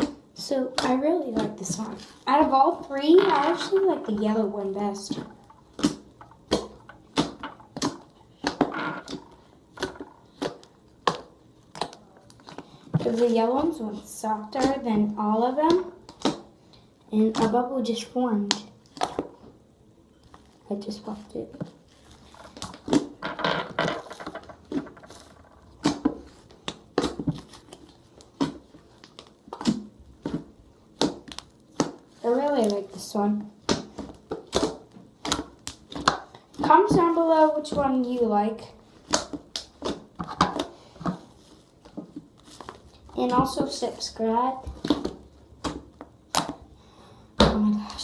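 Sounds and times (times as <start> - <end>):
slime squelching by hand: 0.0 - 19.6, 20.2 - 48.0.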